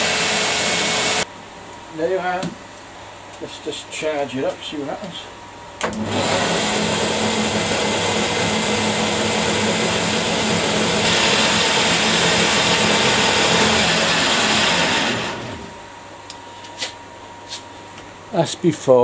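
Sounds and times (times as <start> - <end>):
electric motor humming: 0.0 - 1.2, 5.9 - 15.8.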